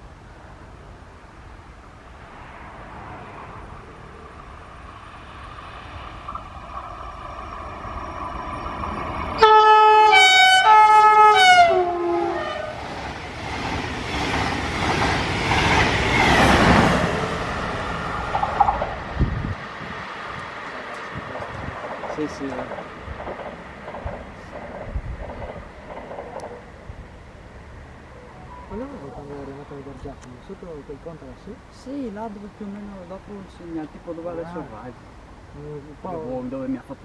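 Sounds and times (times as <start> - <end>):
train rushing past: 1.8 - 31.3
train horn blast: 9.4 - 12.9.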